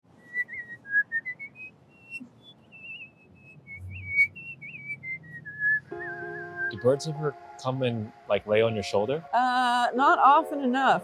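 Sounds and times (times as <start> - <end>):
person whistling a melody: 0.2 - 7.3.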